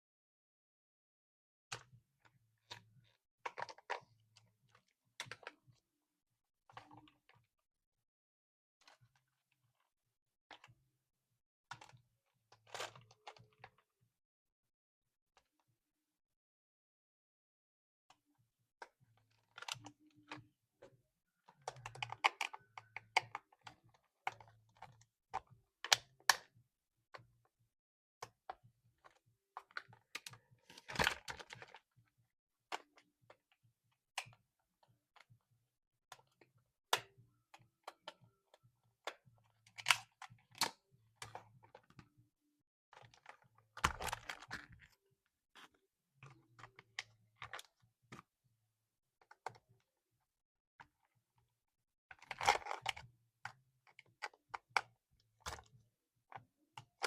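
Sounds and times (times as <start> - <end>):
hands handling plastic toy: 2.6 - 5.8, 11.7 - 13.9, 18.8 - 27.3, 28.2 - 32.0, 32.7 - 35.4, 36.1 - 42.2, 42.9 - 48.3, 52.1 - 57.0.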